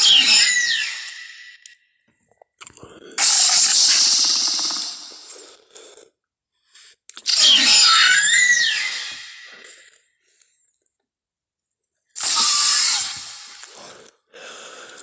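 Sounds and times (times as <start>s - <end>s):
falling screech: 0.0s - 1.6s, 3.2s - 5.2s, 7.3s - 9.8s, 12.2s - 13.9s
loud creature hiss: 3.2s - 5.4s, 12.2s - 14.1s.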